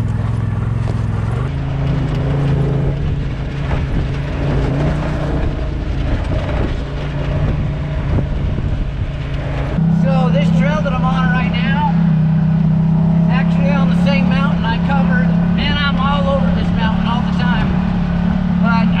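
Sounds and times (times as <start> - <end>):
utility vehicle engine running: 0.0 - 19.0.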